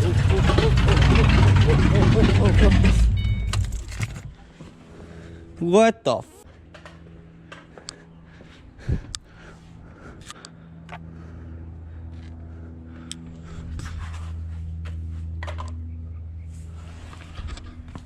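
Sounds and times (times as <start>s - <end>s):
car engine idling with misfire: 0.0s - 4.4s.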